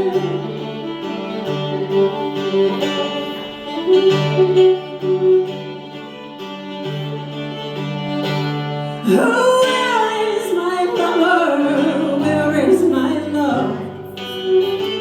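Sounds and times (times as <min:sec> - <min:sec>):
violin gliding melody: 0:00.0 - 0:15.0
acoustic guitar strumming chords: 0:08.8 - 0:15.0.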